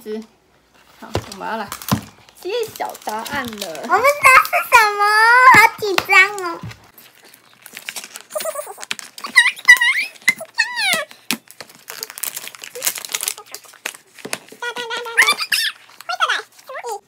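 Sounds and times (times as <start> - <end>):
wrapping crinkling and tearing: 0.8 - 17.0.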